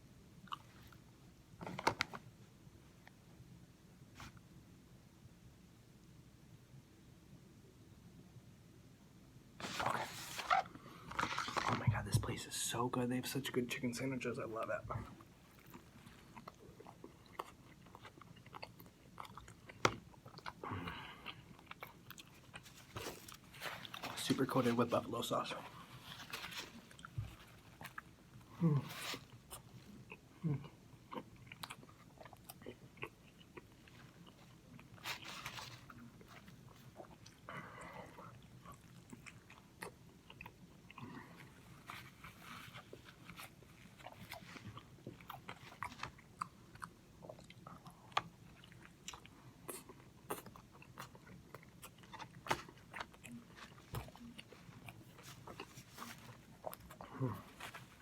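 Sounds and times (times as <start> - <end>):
crunchy chewing: 15.2 - 24.9, 25.7 - 58.0.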